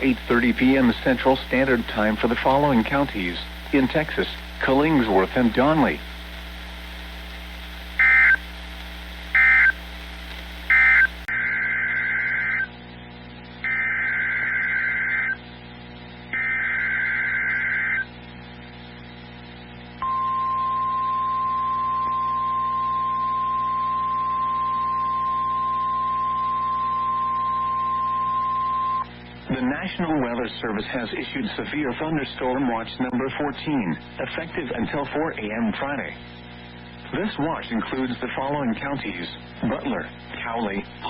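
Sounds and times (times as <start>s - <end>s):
buzzy data tone bursts: 0.0s - 29.2s.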